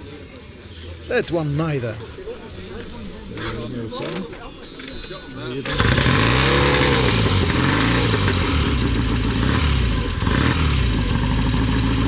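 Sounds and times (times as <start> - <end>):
motorcycle engine revving: 5.6 - 12.0.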